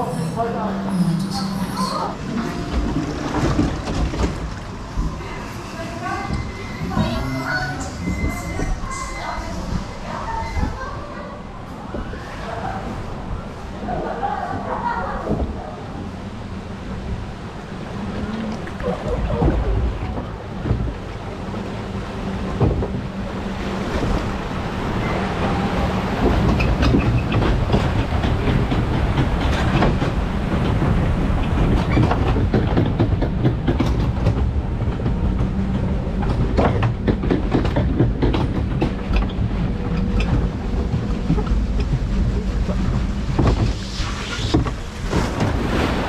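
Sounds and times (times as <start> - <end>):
conveyor rumbling: 0.0 - 46.0
rattle of clattering knocks: 2.3 - 5.2, 26.2 - 43.9.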